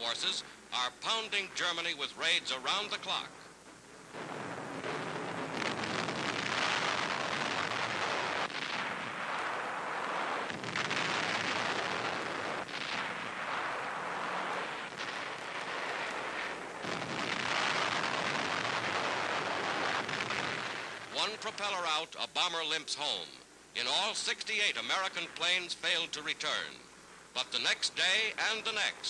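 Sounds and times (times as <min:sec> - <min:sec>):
bombs exploding: 0:02.6 - 0:22.0
guns firing: 0:04.1 - 0:21.5.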